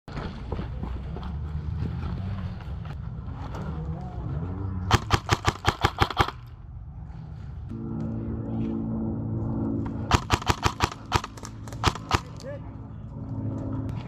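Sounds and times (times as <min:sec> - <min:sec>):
wind and handling rumble: 0:00.1 - 0:14.0
airsoft rifle firing burst: 0:04.9 - 0:06.4, 0:10.1 - 0:12.4.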